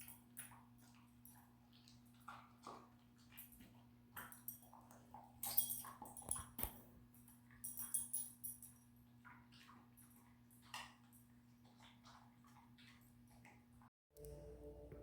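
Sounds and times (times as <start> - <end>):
dog chewing: 0.2 - 6.7, 9.1 - 13.8
collar tags jingling: 5.4 - 8.8
low hum: 14.2 - 15.0.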